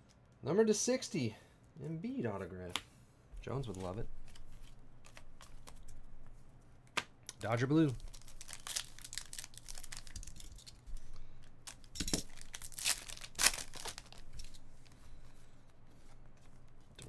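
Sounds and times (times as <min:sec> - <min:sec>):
foil wrappers tearing and crinkling: 0:07.4 - 0:14.6.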